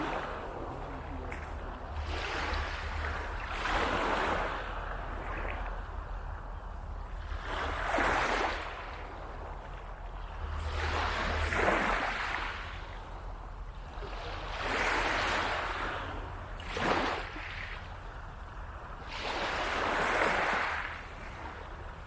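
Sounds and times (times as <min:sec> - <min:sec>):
small waves breaking on beach: 0:00.0 - 0:06.4, 0:07.2 - 0:22.0
sharp wave splash: 0:10.6 - 0:12.8.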